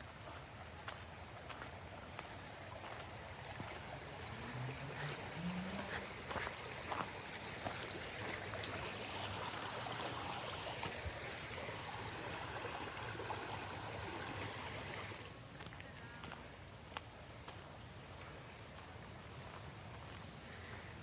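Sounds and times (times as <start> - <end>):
waterfall and stream splashing: 0.0 - 15.7.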